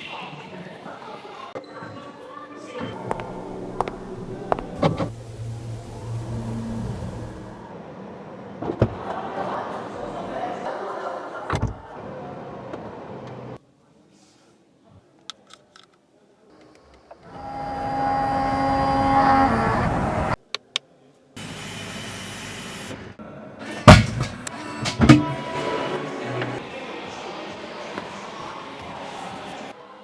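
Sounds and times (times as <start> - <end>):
sharp knocks: 23.9 - 25.5.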